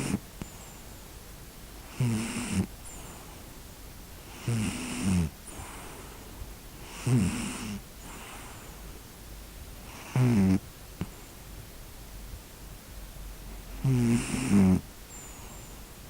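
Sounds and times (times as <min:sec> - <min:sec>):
pet snoring: 0:00.0 - 0:00.2, 0:01.9 - 0:03.2, 0:04.3 - 0:06.0, 0:06.8 - 0:08.8, 0:09.8 - 0:10.7, 0:13.7 - 0:15.7.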